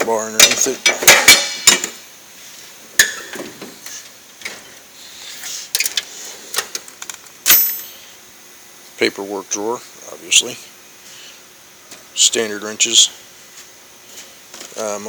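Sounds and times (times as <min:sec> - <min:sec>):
loud metallic clank: 0:00.4 - 0:01.9, 0:07.5 - 0:08.0.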